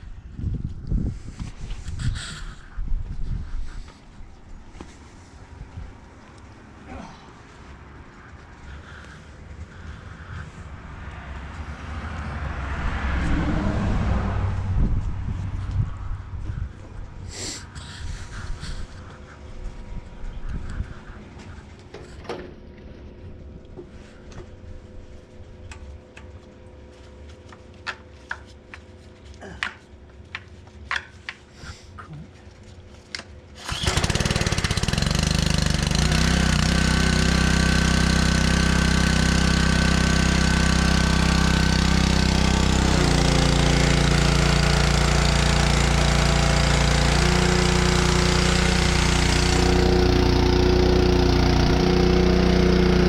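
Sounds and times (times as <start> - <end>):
engine starting and running: 33.1 - 53.0.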